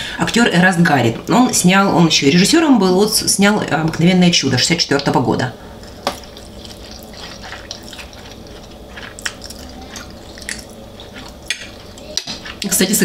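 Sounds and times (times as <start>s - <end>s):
wet chewing of noodles: 5.8s - 12.7s.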